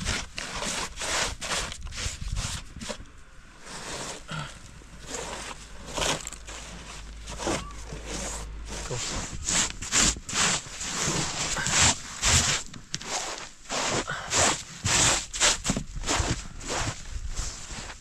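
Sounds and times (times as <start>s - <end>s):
footsteps crunching in snow: 5.0s - 18.0s.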